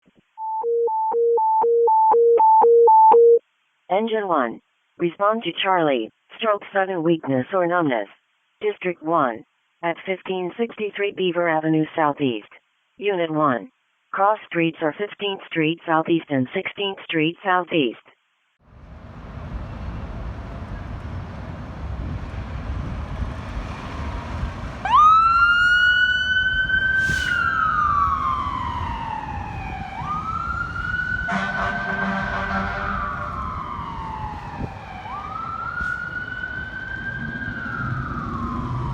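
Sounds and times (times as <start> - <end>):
fire engine rumble: 18.7 - 38.9
siren wailing: 23.8 - 38.9
air horn blast: 31.3 - 33.3.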